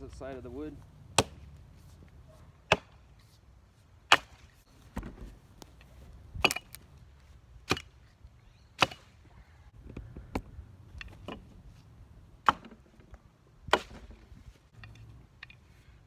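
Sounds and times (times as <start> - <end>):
axe chopping wood: 1.1 - 1.6, 2.6 - 3.1, 4.1 - 5.8, 6.4 - 6.9, 7.6 - 8.0, 8.8 - 9.2, 12.4 - 12.8, 13.6 - 14.2.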